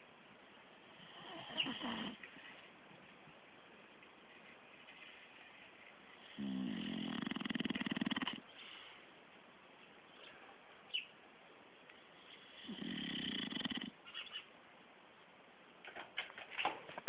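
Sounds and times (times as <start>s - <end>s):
dog snoring: 1.0s - 2.3s, 6.1s - 8.5s, 12.2s - 14.0s.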